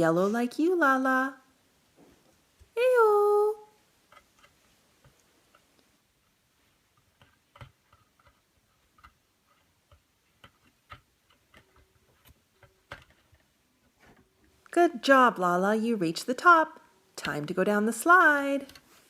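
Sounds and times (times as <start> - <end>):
plastic toy clicks and taps: 7.0 - 13.4.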